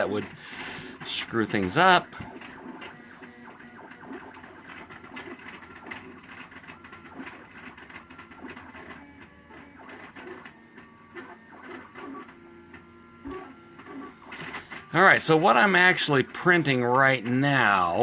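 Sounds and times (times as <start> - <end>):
stepper motors whining: 0.0 - 18.0.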